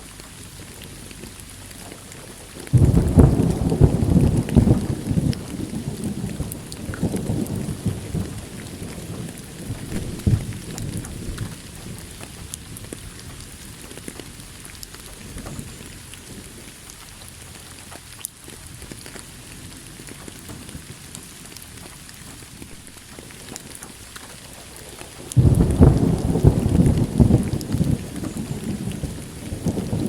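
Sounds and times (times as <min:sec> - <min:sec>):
rain pattering: 0:00.0 - 0:30.0
thunder rumbling: 0:02.3 - 0:16.7, 0:24.8 - 0:30.0.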